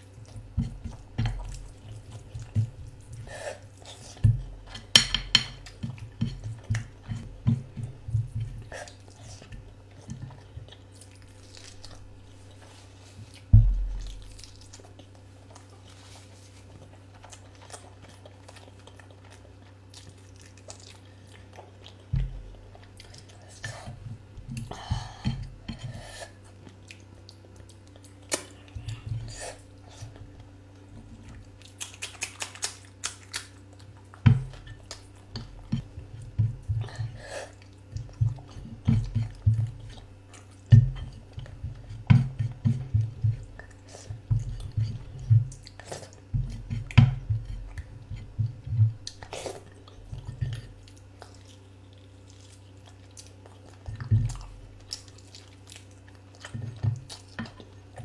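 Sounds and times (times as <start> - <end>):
faint steady hum: 0.0 - 58.0
person chewing food: 0.0 - 58.0
wet mouth smacks: 31.6 - 33.6.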